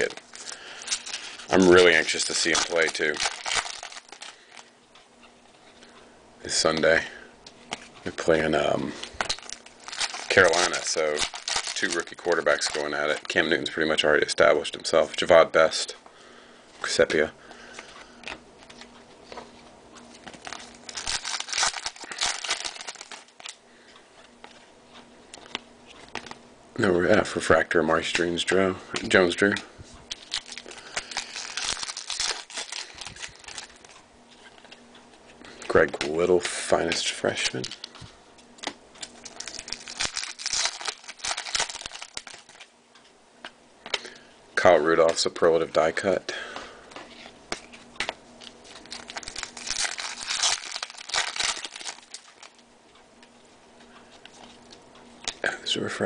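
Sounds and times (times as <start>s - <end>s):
cards rustling: 0.0s - 4.7s, 7.7s - 13.6s, 16.8s - 23.6s, 29.0s - 34.8s, 35.8s - 42.7s, 46.9s - 52.6s
wrapper crinkling and tearing: 0.0s - 4.7s, 9.0s - 13.5s, 20.3s - 23.6s, 30.1s - 34.0s, 39.0s - 42.7s, 48.0s - 52.6s.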